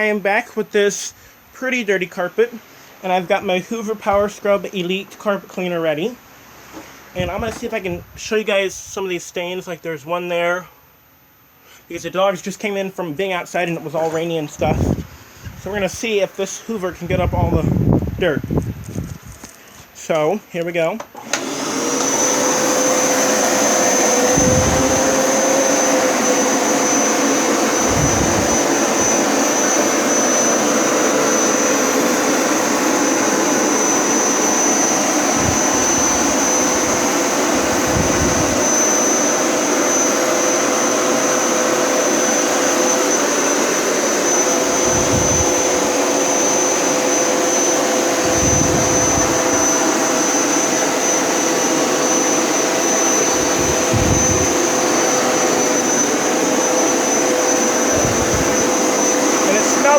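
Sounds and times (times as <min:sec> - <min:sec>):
carpet cleaner motor whining: 0:06.8 - 0:07.8, 0:21.0 - 0:59.9.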